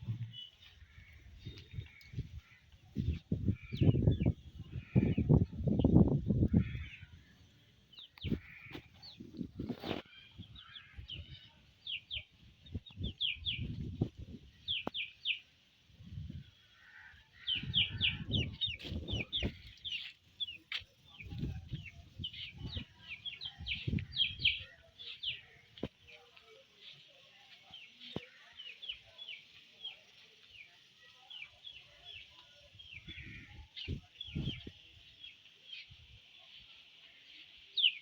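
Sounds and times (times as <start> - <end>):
baby chicks peeping: 17.5 - 25.9.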